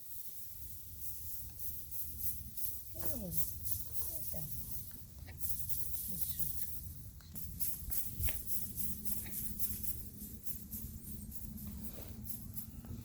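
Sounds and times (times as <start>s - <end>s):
feathers rustling: 0.0s - 12.9s
steady low rumble: 0.5s - 13.0s.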